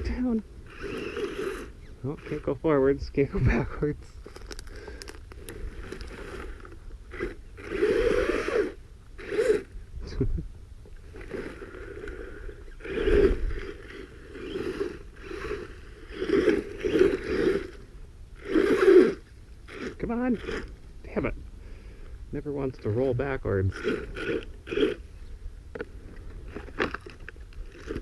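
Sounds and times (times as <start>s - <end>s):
rc truck motor revving: 0.0s - 2.8s, 4.2s - 9.8s, 11.0s - 20.8s, 23.7s - 28.0s.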